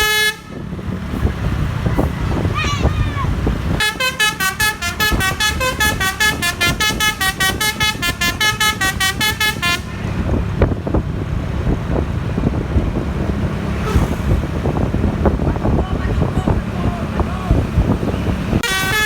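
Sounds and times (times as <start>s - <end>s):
bus horn honking melody: 0.0s - 0.8s, 3.7s - 10.5s, 18.6s - 19.0s
vehicle and road rumble: 0.0s - 19.0s.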